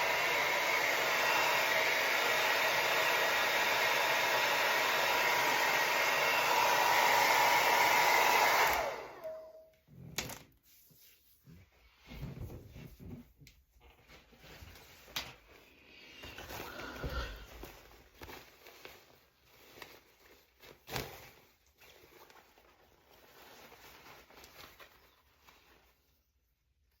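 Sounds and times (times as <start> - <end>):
handling and rustling: 9.8 - 27.0.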